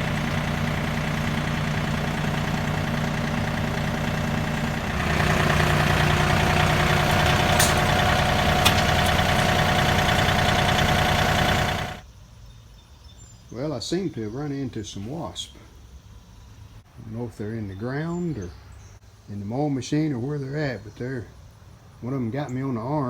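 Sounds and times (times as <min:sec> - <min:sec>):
sickle bar mower rattling: 0:00.0 - 0:12.0
tractor diesel engine running: 0:00.0 - 0:12.0.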